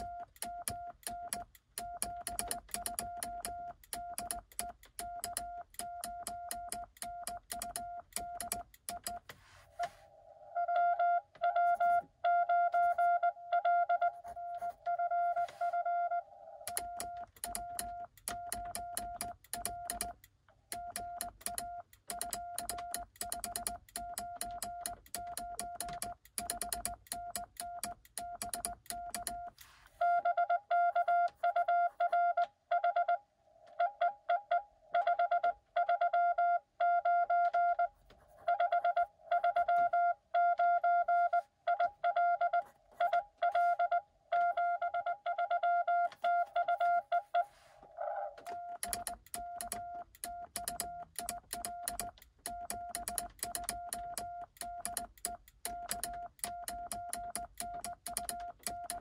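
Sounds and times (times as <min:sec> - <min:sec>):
morse key contacts clicking: 0:00.0 - 0:09.3, 0:16.7 - 0:29.6, 0:48.6 - 0:59.0
morse code tone: 0:09.8 - 0:20.1, 0:20.8 - 0:33.2, 0:33.8 - 0:47.5.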